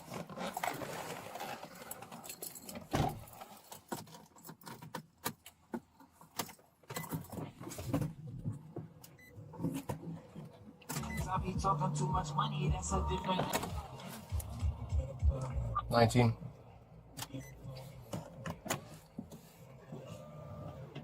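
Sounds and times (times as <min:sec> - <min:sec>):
keys or equipment rattling: 0:02.0 - 0:05.2.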